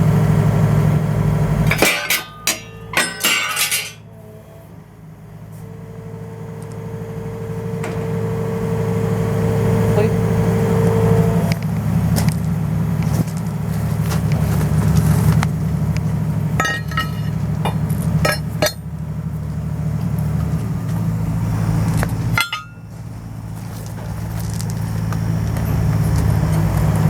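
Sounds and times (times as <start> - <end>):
heavy machine engine running: 0.0 - 27.0
ringing metal clanks: 1.7 - 4.1, 16.6 - 18.9, 22.3 - 23.0.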